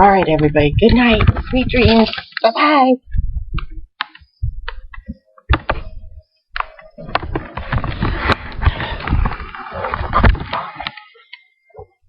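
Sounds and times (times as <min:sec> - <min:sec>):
knocks and low thumps: 0:00.0 - 0:02.0, 0:03.0 - 0:06.3.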